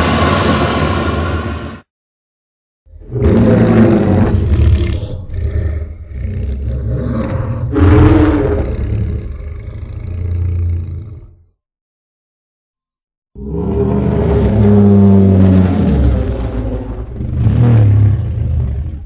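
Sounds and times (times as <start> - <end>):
deep dinosaur roar: 2.9 - 11.4, 13.4 - 19.0.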